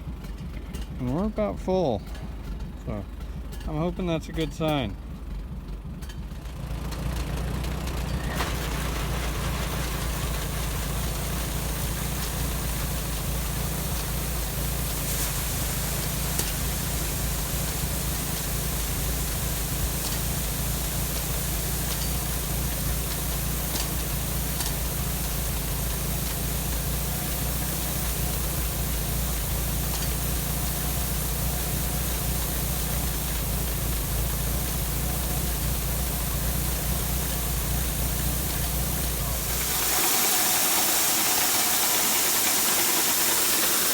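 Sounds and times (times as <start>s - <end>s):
combine harvester engine drone: 0.0s - 43.9s
even hiss of cutting: 10.8s - 43.9s.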